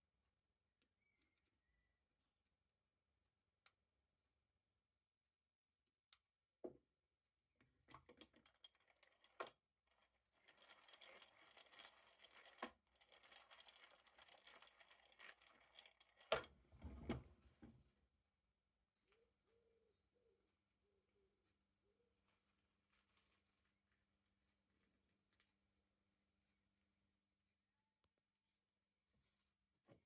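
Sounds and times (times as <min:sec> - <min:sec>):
hand drill gears clattering: 0:08.0 - 0:16.6.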